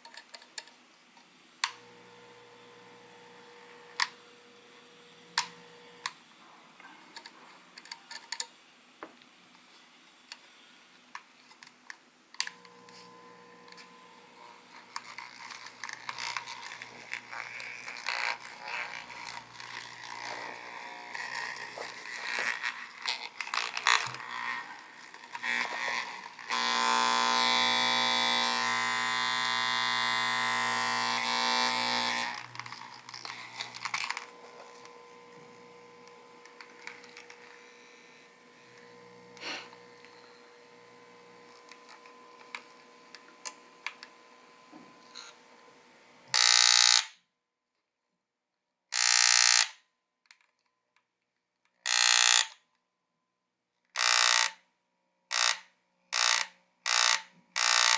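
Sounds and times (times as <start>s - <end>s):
electric massager buzzing: 1.6s - 6.2s, 12.4s - 47.1s, 49.0s - 49.7s, 51.9s - 52.5s, 54.0s - 54.6s, 55.3s - 57.9s.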